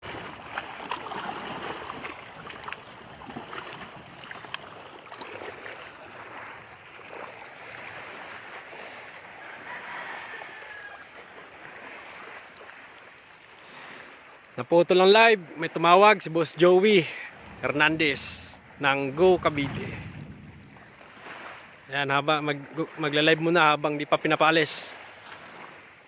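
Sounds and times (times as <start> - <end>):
rushing outdoor ambience: 15.7 - 23.1.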